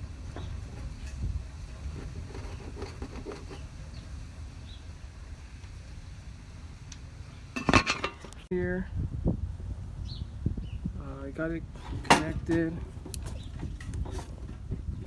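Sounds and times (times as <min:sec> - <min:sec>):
hose fitting clicks and rustling: 0:11.8 - 0:15.0.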